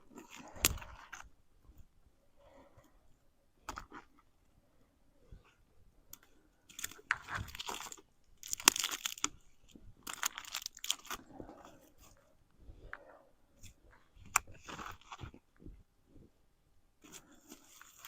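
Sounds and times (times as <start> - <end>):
dry sticks crunching and snapping: 0.1 - 1.2, 6.7 - 9.4, 10.0 - 11.2.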